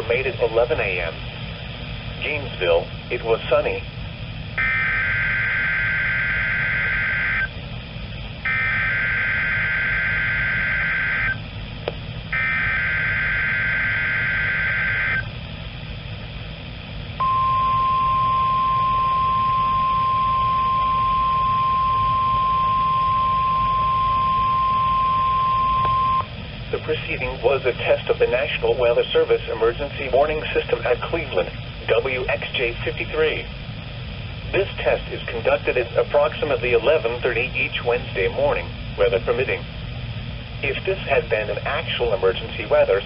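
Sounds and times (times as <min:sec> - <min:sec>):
radio hiss: 0:00.0 - 0:15.4, 0:16.1 - 0:43.0
steady warning alarm tone: 0:03.1 - 0:15.6, 0:17.2 - 0:29.4
warbling digital data bursts: 0:04.6 - 0:07.5, 0:12.4 - 0:15.3.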